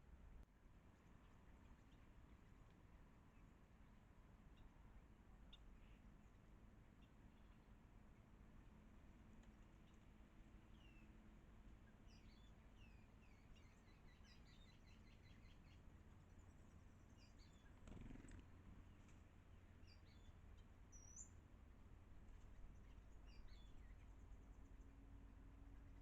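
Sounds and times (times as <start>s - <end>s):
low background rumble: 0.0s - 26.0s
birds chirping: 11.7s - 21.4s, 22.5s - 25.0s.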